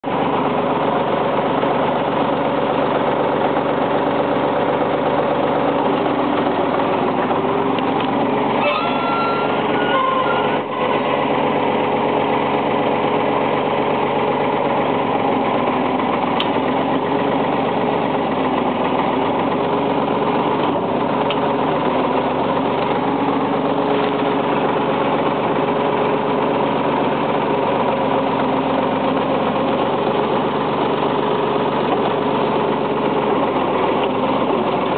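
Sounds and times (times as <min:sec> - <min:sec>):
backhoe engine running: 0:00.0 - 0:34.9
high-pitched whine: 0:06.3 - 0:11.4.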